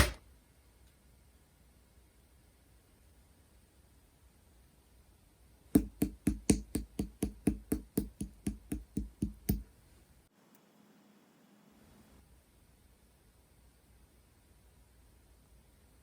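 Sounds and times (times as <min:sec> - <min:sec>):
rapid sharp knocks: 0:05.8 - 0:09.6.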